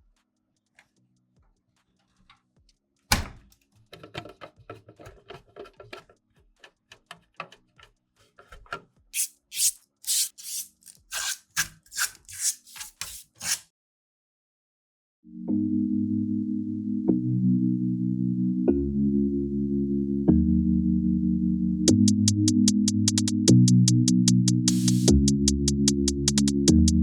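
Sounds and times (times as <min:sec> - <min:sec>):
small clicks and rustles: 0:03.4 - 0:09.0
quick scraping strokes: 0:09.2 - 0:13.7, 0:24.7 - 0:25.1.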